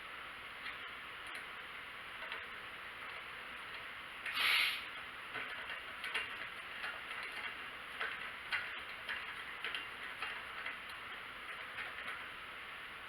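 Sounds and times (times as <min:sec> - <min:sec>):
steady hiss: 0:00.0 - 0:05.3
small hardware clicking and tapping: 0:05.3 - 0:12.3.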